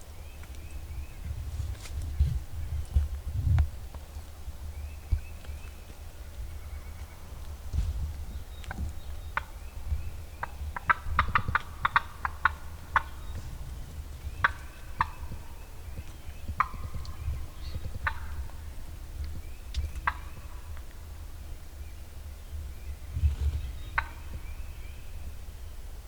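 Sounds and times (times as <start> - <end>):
wild turkeys gobbling: 8.6 - 19.3, 19.9 - 21.5, 23.6 - 25.0.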